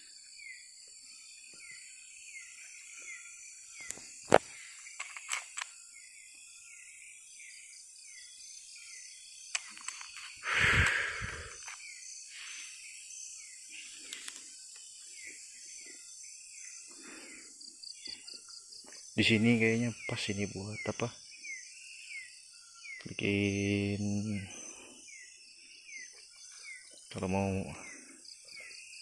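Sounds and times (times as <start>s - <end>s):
insect chirping call: 0.0s - 29.0s
insect chorus drone: 0.0s - 29.0s
sharp clicks: 5.0s - 5.7s, 9.5s - 11.8s.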